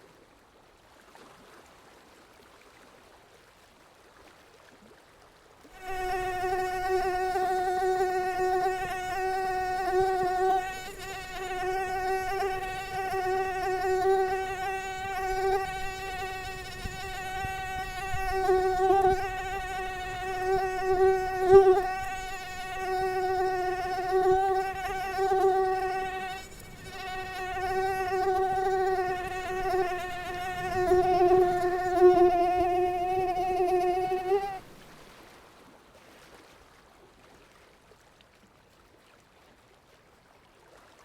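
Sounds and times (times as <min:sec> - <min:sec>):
mosquito wingbeat whine: 0:05.8 - 0:34.6.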